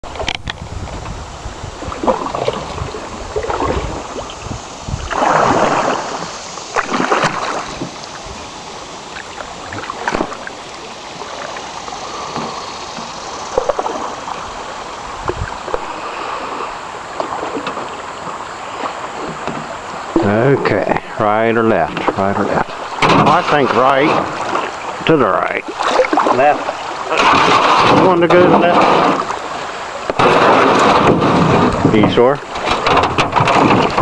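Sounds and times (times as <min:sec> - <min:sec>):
river water rushing and splashing: 0:00.0 - 0:34.0.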